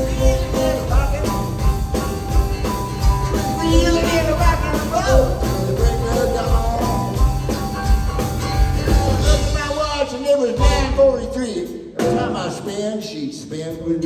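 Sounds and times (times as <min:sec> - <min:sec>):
bending lead guitar lines: 0:00.0 - 0:09.6
steady drum beat: 0:00.0 - 0:12.8
rock and roll band playing: 0:00.0 - 0:13.1.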